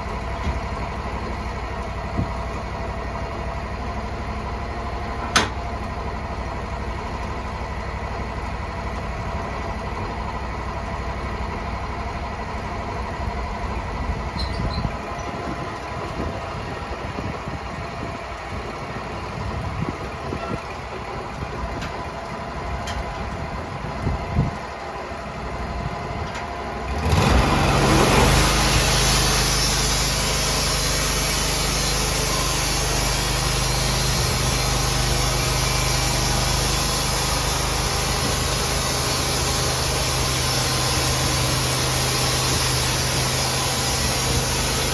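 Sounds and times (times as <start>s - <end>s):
sawmill engine running: 0.0s - 44.9s
small engine knocks: 5.2s - 5.6s.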